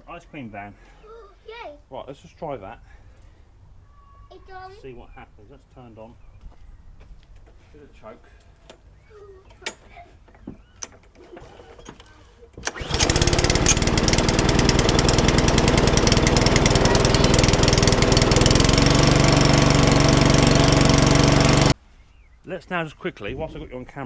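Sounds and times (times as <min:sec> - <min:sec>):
lawnmower engine running: 0:12.6 - 0:21.8.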